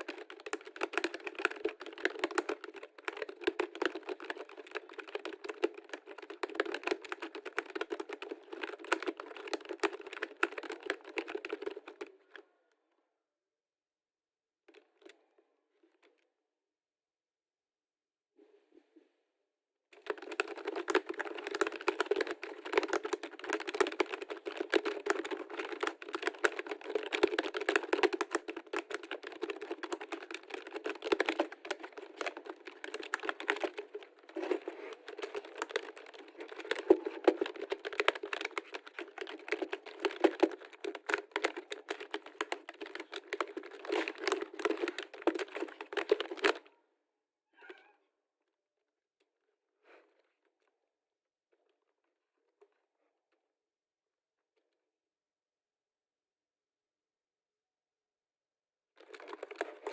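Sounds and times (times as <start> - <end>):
keyboard typing: 0.0 - 12.0, 20.0 - 46.7.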